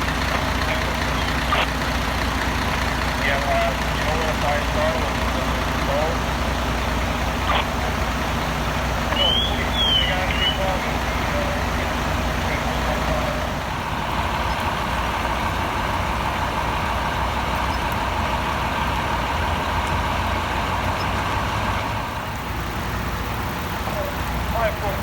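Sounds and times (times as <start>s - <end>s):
mid-pitched hum: 0.0s - 14.8s
fire truck engines idling: 0.0s - 25.0s.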